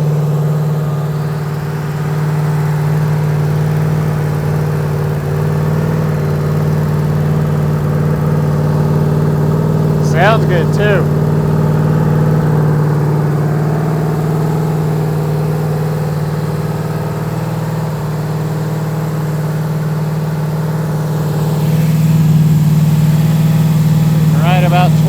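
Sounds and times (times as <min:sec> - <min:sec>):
engine running steadily: 0:22.6 - 0:25.0.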